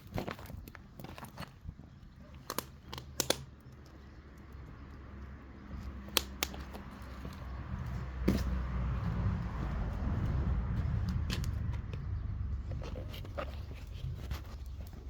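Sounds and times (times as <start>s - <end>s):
fire pops and snaps: 2.4s - 4.0s, 6.1s - 6.9s
low rumble: 7.6s - 13.2s.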